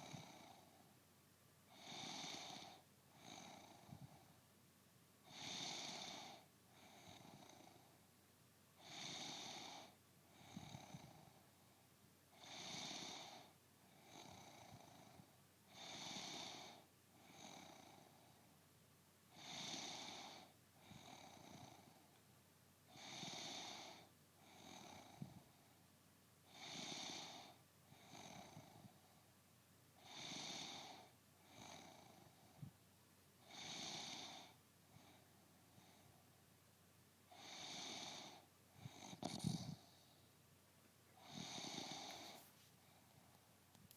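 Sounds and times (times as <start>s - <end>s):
soft breathing: 37.3s - 40.4s, 41.2s - 43.9s
woman snoring faintly: 37.4s - 39.9s.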